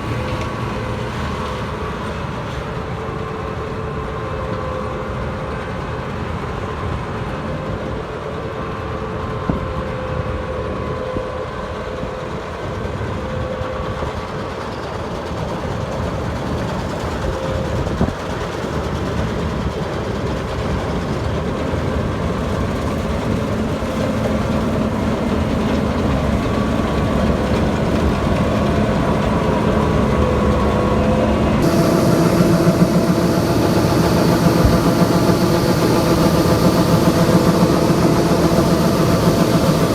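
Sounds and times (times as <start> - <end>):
heavy farm machinery running: 14.8 - 39.9.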